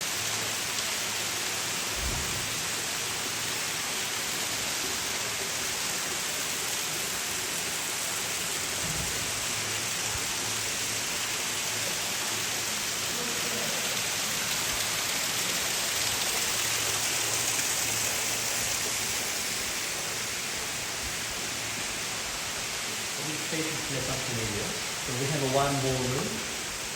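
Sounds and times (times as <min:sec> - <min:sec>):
steady hiss: 0:00.0 - 0:26.9.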